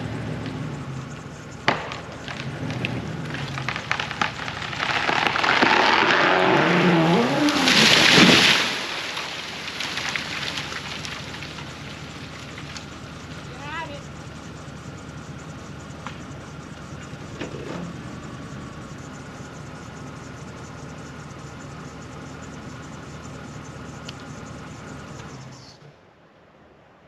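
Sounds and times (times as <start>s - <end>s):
engine running: 0.0s - 25.9s
tree crashing into ground: 1.7s - 13.0s
tree wood cracking and snapping: 1.7s - 13.0s
rush of branches and leaves: 3.5s - 12.9s.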